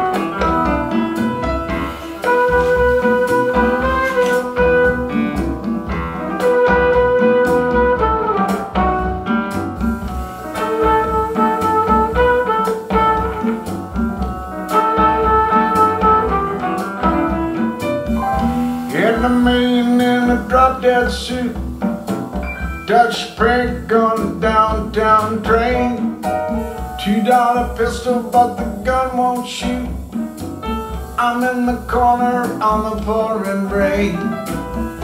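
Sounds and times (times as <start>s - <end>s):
bass: 0.0s - 35.0s
drum beat: 0.0s - 35.0s
guitar: 0.0s - 35.0s.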